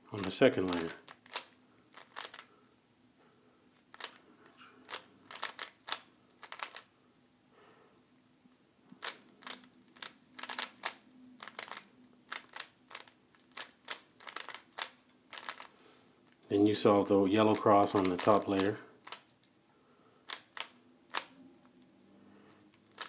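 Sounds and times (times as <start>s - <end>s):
puzzle cube clacking turns: 0.2s - 2.8s, 3.7s - 4.2s, 4.8s - 6.9s, 8.9s - 16.4s, 17.5s - 19.5s, 20.2s - 21.9s, 22.7s - 23.0s.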